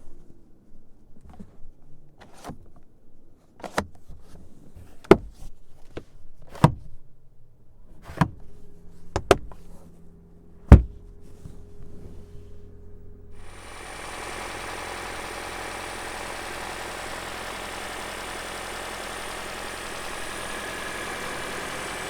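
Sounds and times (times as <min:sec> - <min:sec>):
steady low hum: 0:08.6 - 0:22.0
heavy low thump: 0:10.7 - 0:11.1.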